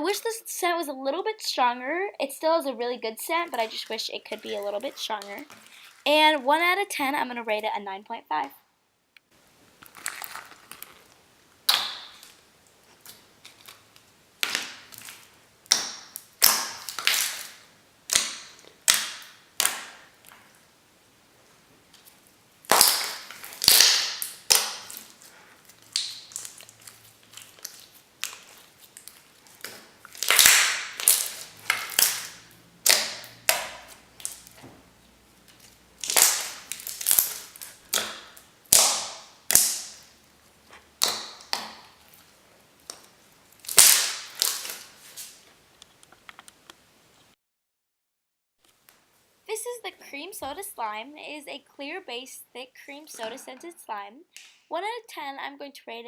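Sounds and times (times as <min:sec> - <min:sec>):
bubbly slime crackles: 0:03.0 - 0:07.1, 0:09.7 - 0:20.6, 0:21.9 - 0:34.6, 0:35.4 - 0:45.6
slime popping and clicking: 0:11.6 - 0:12.4, 0:14.4 - 0:20.4, 0:22.7 - 0:25.1, 0:25.8 - 0:34.6, 0:36.0 - 0:40.1, 0:41.0 - 0:42.0.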